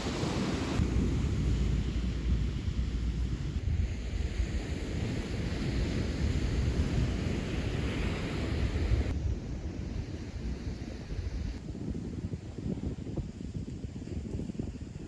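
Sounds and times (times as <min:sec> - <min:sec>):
wind blowing across microphone: 0:00.0 - 0:15.0.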